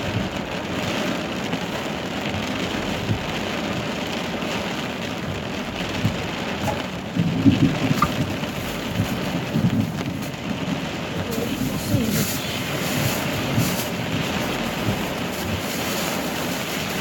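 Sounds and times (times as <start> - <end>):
heavy rain pouring: 0.0 - 17.0
thunder rumbles: 0.0 - 17.0.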